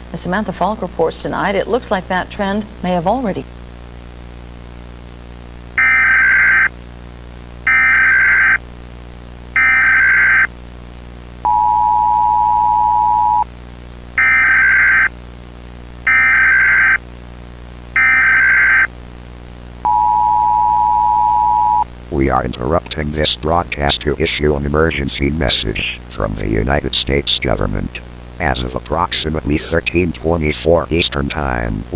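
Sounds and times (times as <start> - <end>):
two-tone attention signal: 9.6 - 10.5, 11.5 - 13.5, 19.9 - 21.8.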